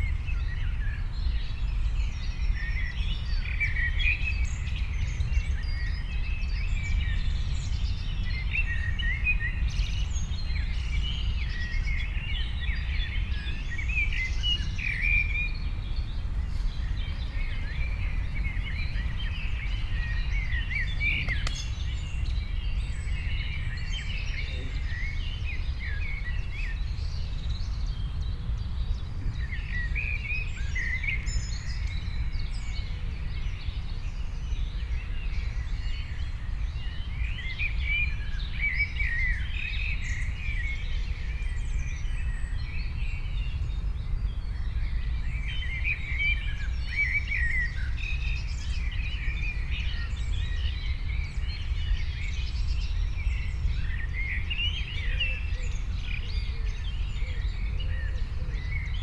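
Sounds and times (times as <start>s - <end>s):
songbirds chirping: 0.0s - 59.0s
steady low rumble: 14.6s - 23.1s.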